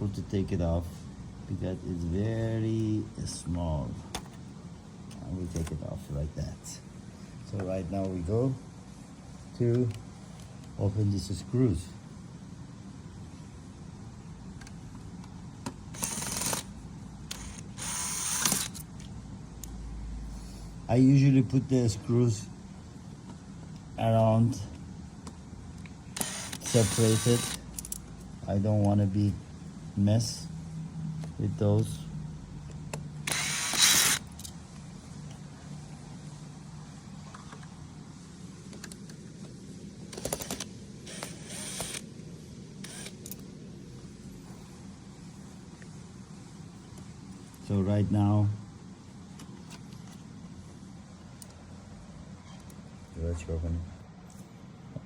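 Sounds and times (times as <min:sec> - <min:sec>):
steady low hum: 0:00.0 - 0:55.0
ratchet tool clicking: 0:15.9 - 0:16.7, 0:17.3 - 0:18.8, 0:26.2 - 0:28.0, 0:33.3 - 0:34.5, 0:40.2 - 0:42.0.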